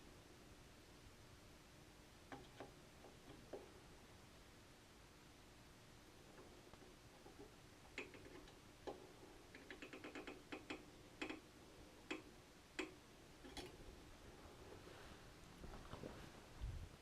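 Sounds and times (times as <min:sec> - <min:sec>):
small clicks and taps from hands: 0:06.4 - 0:11.4.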